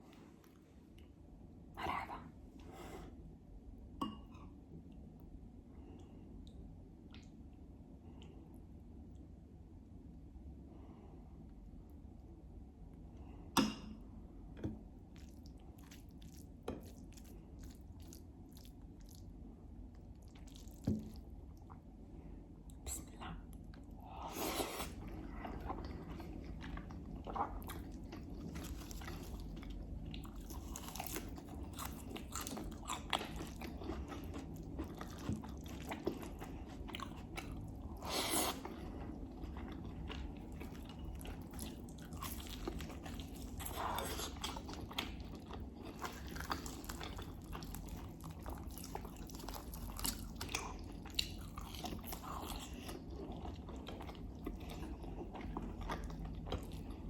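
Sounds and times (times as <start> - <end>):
chewing and biting food: 15.1 - 19.3, 23.7 - 57.0.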